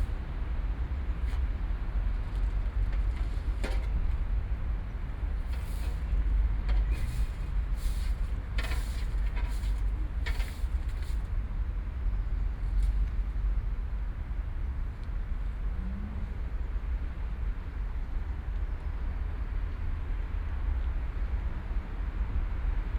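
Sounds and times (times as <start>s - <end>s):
distant road traffic rumble: 0.0s - 22.9s.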